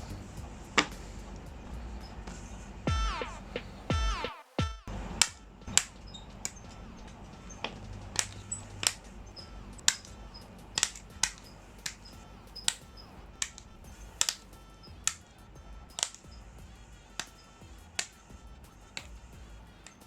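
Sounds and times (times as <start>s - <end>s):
nippers cutting plastic parts: 9.8s - 15.2s.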